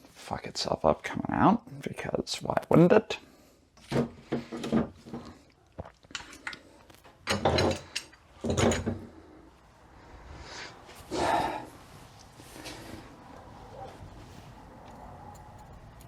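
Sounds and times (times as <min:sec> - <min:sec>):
metal parts knocking and scraping: 0:06.2 - 0:09.0.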